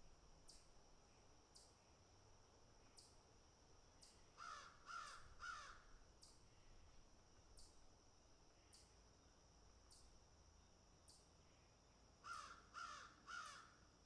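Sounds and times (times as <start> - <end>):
crow cawing: 4.4 - 5.9, 12.2 - 13.8.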